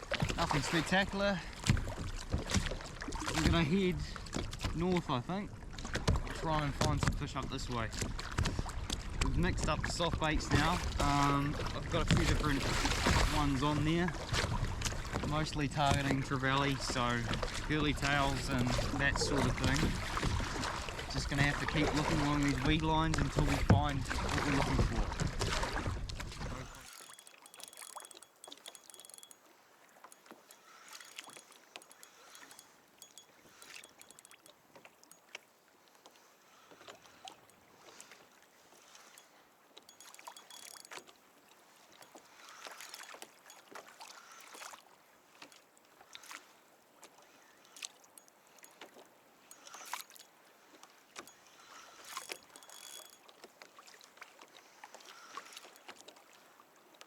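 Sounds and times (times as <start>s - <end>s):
paddle strokes swishing water: 11.6s - 57.0s
water dripping off paddle: 26.4s - 35.4s, 36.0s - 56.4s.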